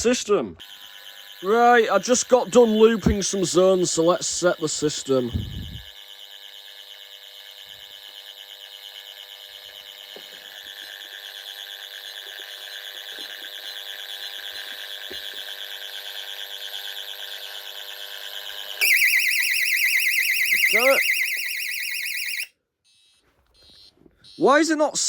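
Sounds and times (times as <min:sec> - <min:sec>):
warbling alarm exit tone: 0:18.8 - 0:22.5.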